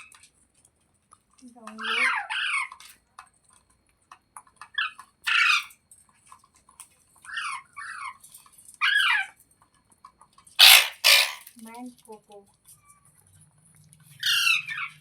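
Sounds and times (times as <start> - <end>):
parrot chirping squawks: 10.6 - 11.5, 14.2 - 15.0
parrot harsh screech: 10.6 - 11.5, 14.2 - 14.9.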